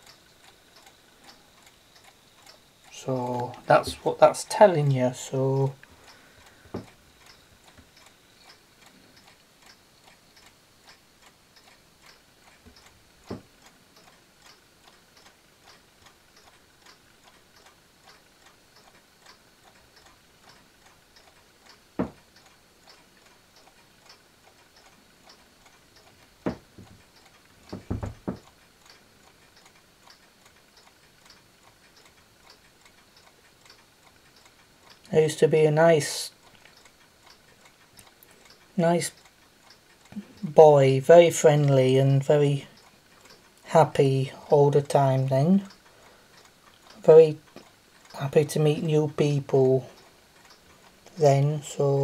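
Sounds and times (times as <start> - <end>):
mechanical clock ticking: 0.0 - 52.0
louder knocks: 22.0 - 22.2, 27.7 - 28.4.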